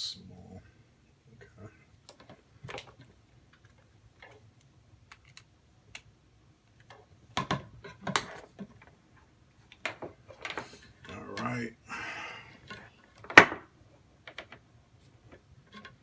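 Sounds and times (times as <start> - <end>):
plastic electronics clicking: 2.0 - 8.4.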